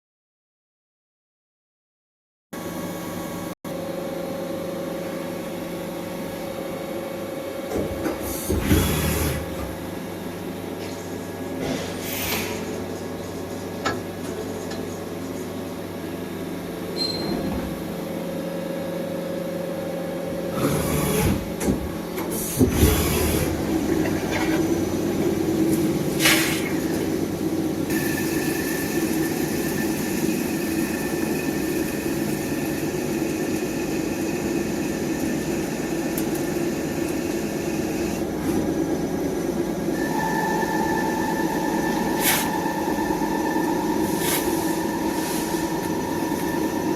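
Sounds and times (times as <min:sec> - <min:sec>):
machine mechanical hum: 0:02.6 - 0:46.9
high steady whine: 0:39.7 - 0:46.9.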